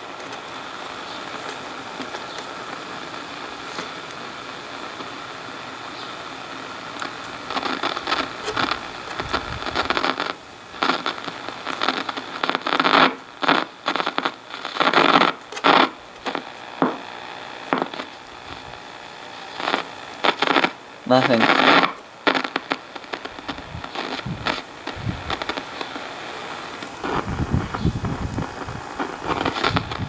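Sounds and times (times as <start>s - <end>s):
bursts of noise and crackle: 0.0s - 30.0s
radio static hiss: 0.0s - 30.0s.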